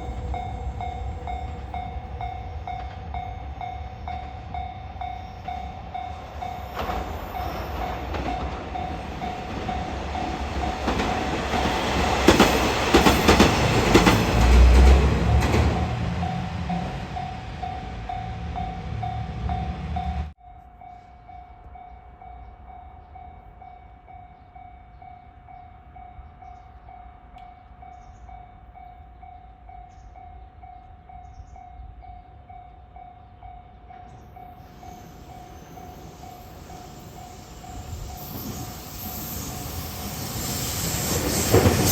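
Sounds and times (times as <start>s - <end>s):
train passing loudly: 0.0s - 20.4s, 33.7s - 41.9s
faint approaching train: 0.0s - 41.9s.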